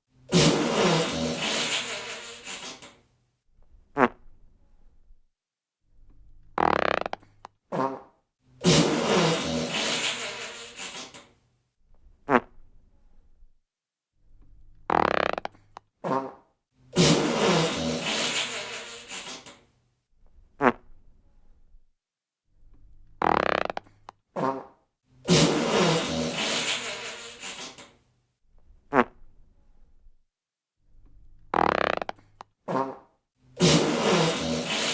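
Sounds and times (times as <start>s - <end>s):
fart sounds: 0.3s - 3.0s, 3.9s - 4.3s, 6.6s - 11.3s, 12.2s - 12.6s, 14.9s - 19.6s, 20.6s - 21.0s, 23.2s - 27.9s, 28.9s - 29.3s, 31.5s - 34.9s.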